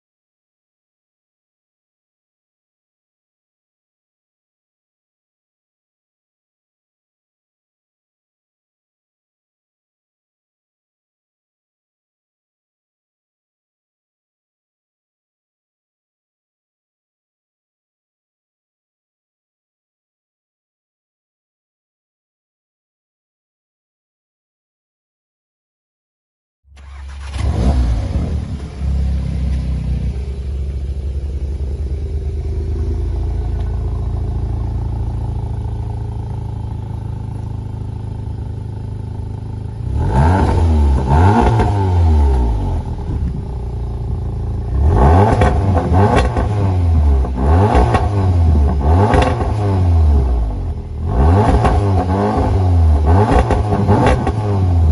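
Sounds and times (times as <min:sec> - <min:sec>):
car engine starting and idling: 0:26.7 - 0:54.9
engine revving: 0:26.8 - 0:54.9.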